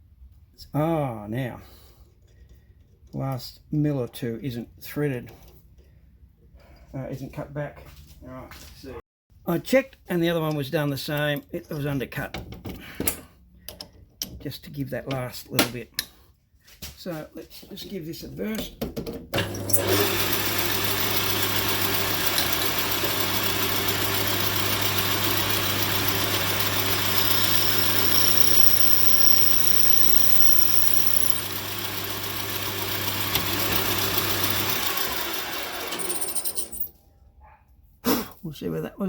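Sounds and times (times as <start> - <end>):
cutting whir: 19.4 - 36.8
machine tool motor hum: 19.5 - 36.8
thin high whine: 27.4 - 31.4.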